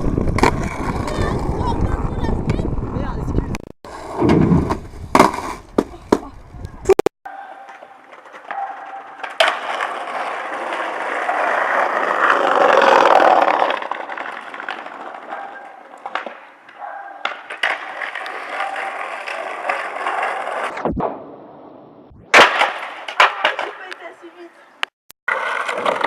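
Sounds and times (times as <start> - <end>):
skateboard wheels rolling on pavement: 0.0 - 21.4, 22.3 - 26.0
skateboard clacking on ground: 7.4 - 20.6, 22.4 - 24.3, 25.3 - 26.0.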